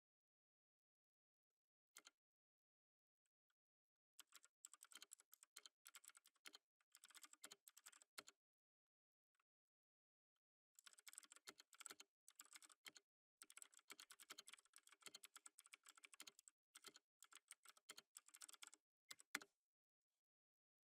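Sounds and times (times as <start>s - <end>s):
typing on computer keyboard: 4.2s - 8.4s, 10.8s - 19.6s.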